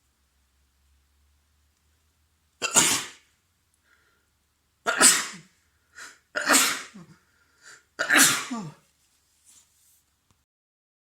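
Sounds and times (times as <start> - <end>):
man sneezing: 2.6 - 3.3, 4.9 - 8.8.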